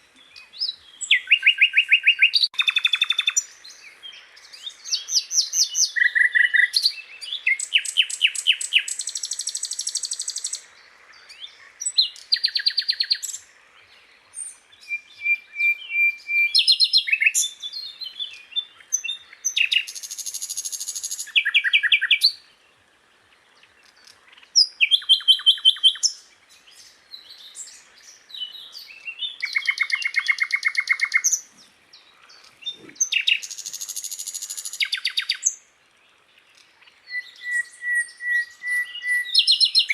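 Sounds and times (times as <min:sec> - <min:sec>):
flycatcher singing: 0:23.8 - 0:35.6.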